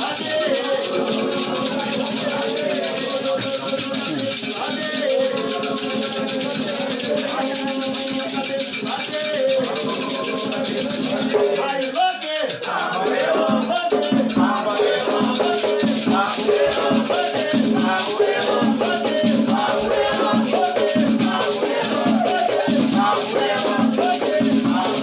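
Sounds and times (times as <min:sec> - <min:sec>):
rattles shaken rhythmically: 0:00.0 - 0:25.0
voices singing a chant: 0:00.0 - 0:25.0.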